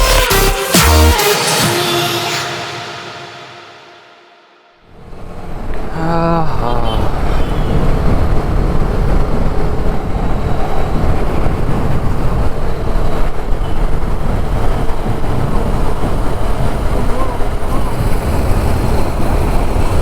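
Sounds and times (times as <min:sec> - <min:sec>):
wind buffeting microphone: 0:07.1 - 0:20.0.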